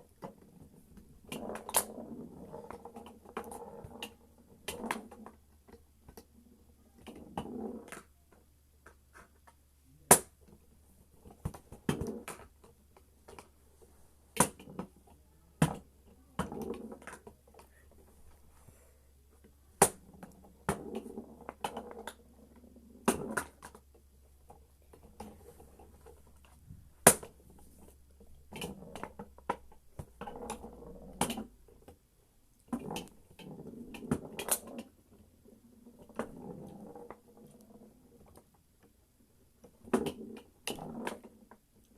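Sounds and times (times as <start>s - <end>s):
foosball ball clacking: 27.0s - 27.4s.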